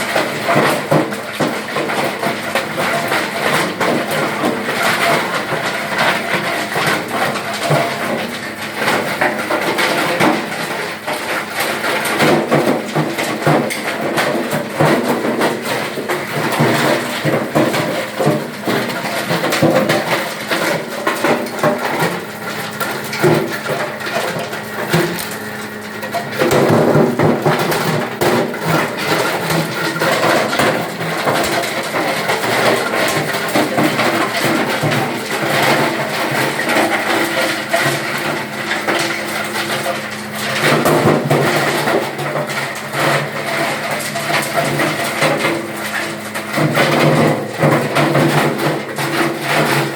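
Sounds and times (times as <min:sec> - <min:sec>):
wood cracking and knocking: 0:00.0 - 0:49.9.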